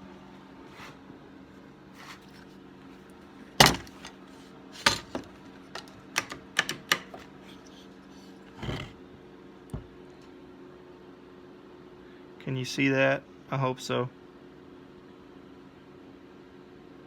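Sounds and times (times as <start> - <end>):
metal tools clanking on workbench: 3.6 - 4.2, 4.8 - 7.9, 8.5 - 9.0.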